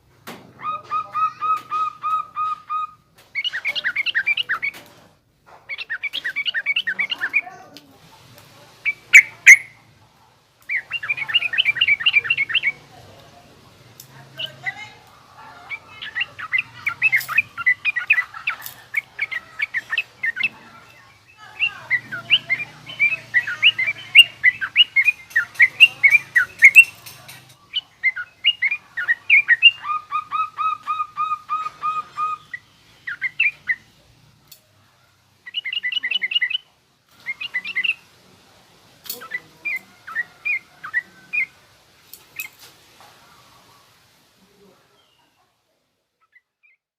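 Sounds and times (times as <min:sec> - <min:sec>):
bird singing chattering phrases: 0:00.6 - 0:07.8, 0:08.8 - 0:10.0, 0:10.6 - 0:13.2, 0:13.9 - 0:34.0, 0:35.4 - 0:38.2, 0:39.0 - 0:41.6, 0:42.2 - 0:42.6.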